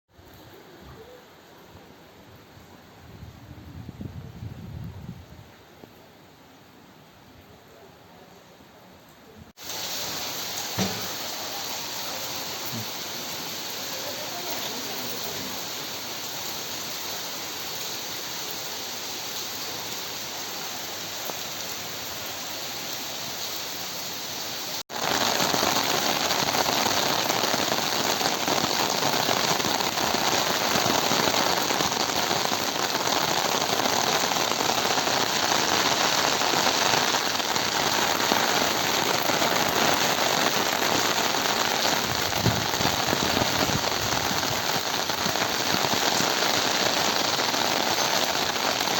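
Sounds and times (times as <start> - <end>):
steady rain falling: 0.1 - 48.9
heavy downpour on a surface: 9.5 - 48.9.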